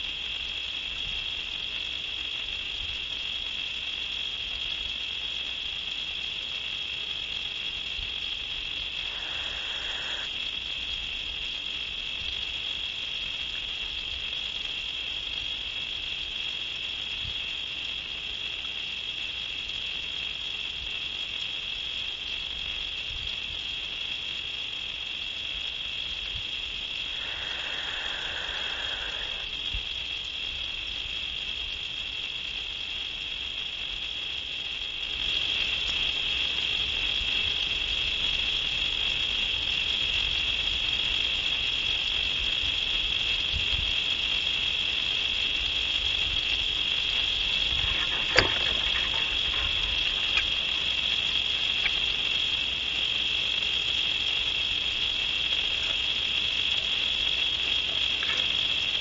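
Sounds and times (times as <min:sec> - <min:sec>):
chorus of night insects: 0:00.0 - 0:59.0
sharp click: 0:47.8 - 0:50.8.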